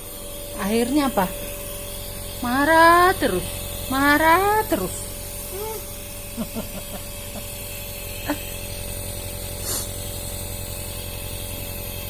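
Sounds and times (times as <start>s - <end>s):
compressor motor hum: 0.0s - 12.0s
mist hissing: 9.6s - 10.1s.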